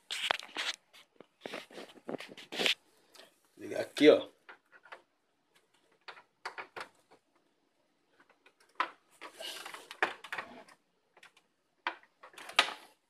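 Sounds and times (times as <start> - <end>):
rustling: 0.0 - 6.2.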